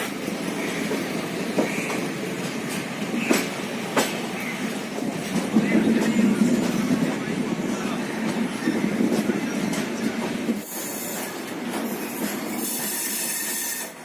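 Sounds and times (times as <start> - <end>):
train rumble: 0.0 - 14.0
wheel clacks over rail joints: 0.8 - 7.2.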